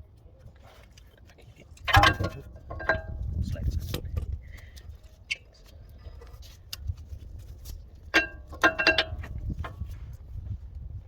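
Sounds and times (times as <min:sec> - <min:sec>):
metal parts and tools clinking: 0:01.8 - 0:03.4, 0:08.0 - 0:09.9.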